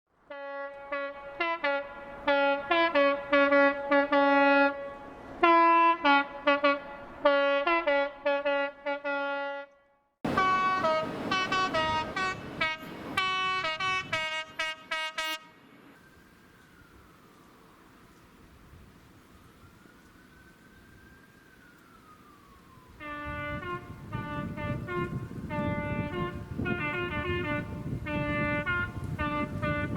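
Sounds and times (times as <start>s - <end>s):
train noise: 0.2s - 9.3s, 10.3s - 20.1s
train horns short blasts: 0.3s - 15.6s, 23.0s - 29.9s.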